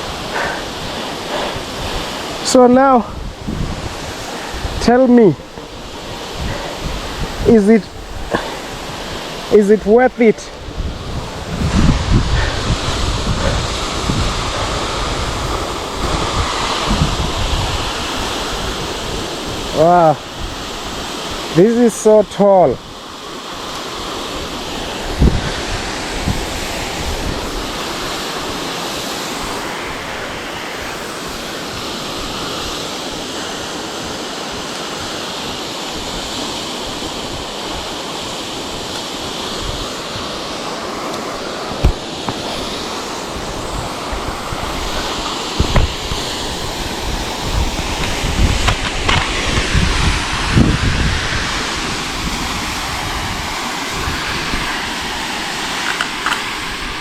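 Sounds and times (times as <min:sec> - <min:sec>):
waterfall rushing: 0:00.0 - 0:57.0
wind gusting on microphone: 0:00.0 - 0:57.0.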